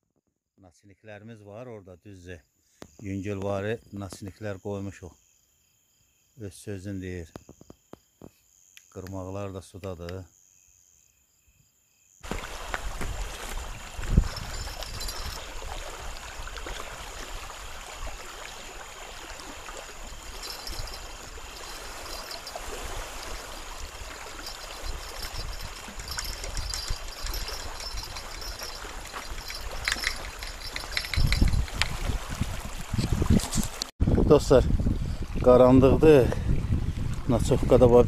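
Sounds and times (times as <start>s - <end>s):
insects chirping faintly: 0.8s - 36.7s
steady wind: 12.2s - 38.0s
wind gusts rumbling on microphone: 12.3s - 38.0s.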